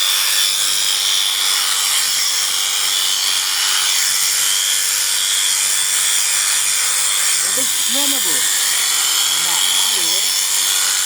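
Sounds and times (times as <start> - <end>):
electric shears buzzing: 0.0 - 11.0.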